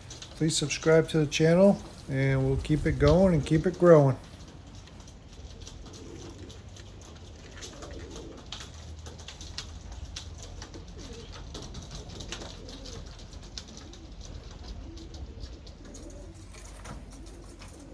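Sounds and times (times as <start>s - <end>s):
steady low rumble: 0.0s - 4.5s
pigeons cooing: 0.0s - 17.9s.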